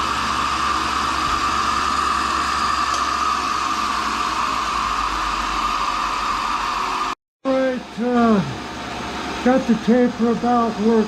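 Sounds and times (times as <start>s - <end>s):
grinder whirring: 0.0s - 7.2s.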